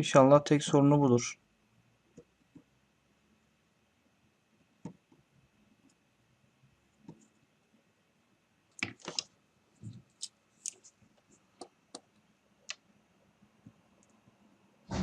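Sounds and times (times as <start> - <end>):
faint clicks and taps of hand work: 8.8 - 12.8.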